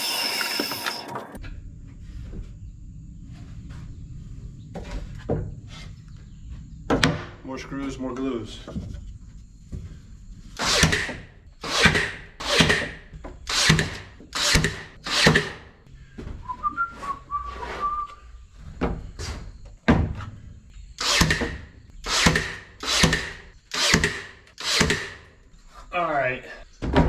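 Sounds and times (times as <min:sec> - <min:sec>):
person whistling: 0:16.4 - 0:18.2.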